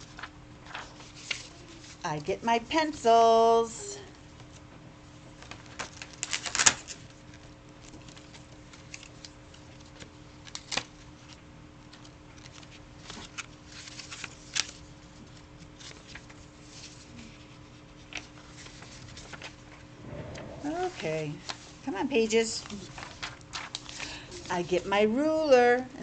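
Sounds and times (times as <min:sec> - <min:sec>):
book pages rustling and turning: 0:00.0 - 0:02.0, 0:05.4 - 0:19.9, 0:22.6 - 0:24.8
faint steady hum: 0:00.0 - 0:26.0.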